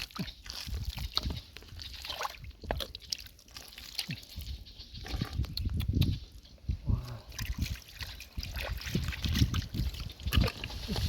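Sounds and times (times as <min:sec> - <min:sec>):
water sloshing and splashing: 0:00.0 - 0:05.7, 0:07.3 - 0:11.0
squelching in wet mud: 0:00.0 - 0:11.0.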